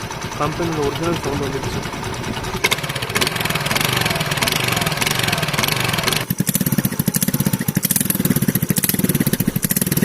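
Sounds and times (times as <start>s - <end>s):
scooter engine running: 0.0s - 10.0s.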